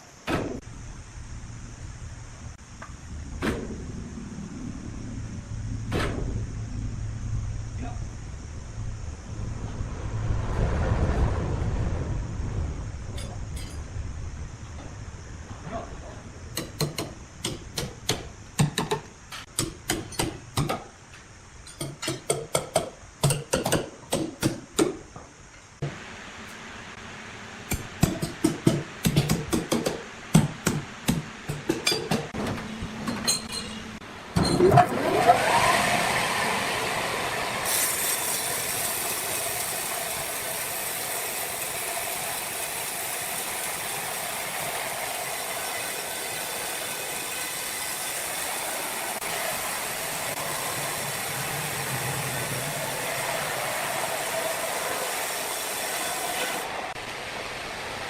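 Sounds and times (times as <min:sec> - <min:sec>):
sharp knocks and clatters: 0:27.7 - 0:33.8
sawmill machine whining: 0:34.6 - 0:58.0.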